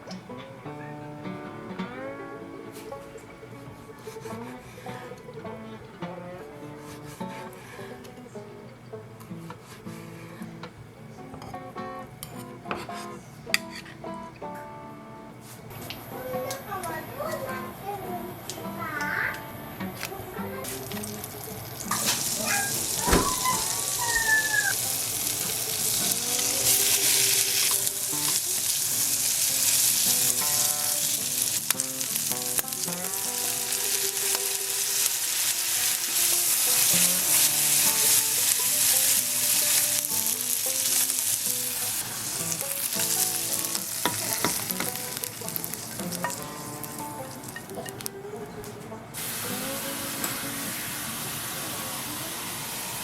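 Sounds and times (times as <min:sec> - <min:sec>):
squid sizzling in a pan: 0:20.9 - 0:48.1, 0:49.2 - 0:53.0.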